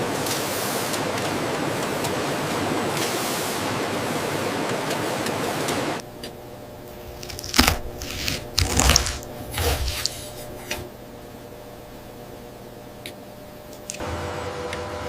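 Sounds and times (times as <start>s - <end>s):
steady rushing noise: 0.0s - 6.1s
crunching clattering handling: 6.9s - 10.9s.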